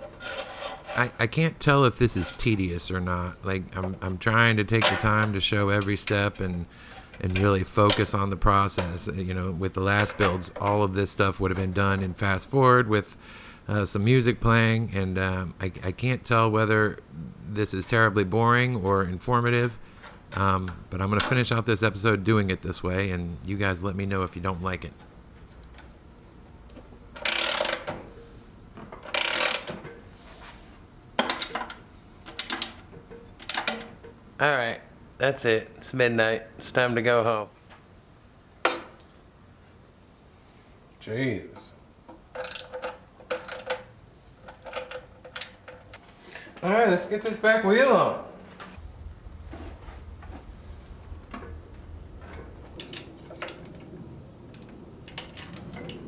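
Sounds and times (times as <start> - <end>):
low steady hum: 0.0 - 56.0
ratchet wrench clicking: 27.2 - 27.9, 29.1 - 29.7
metal parts clicking: 27.2 - 28.0, 29.0 - 29.8, 31.2 - 32.8, 33.4 - 33.9.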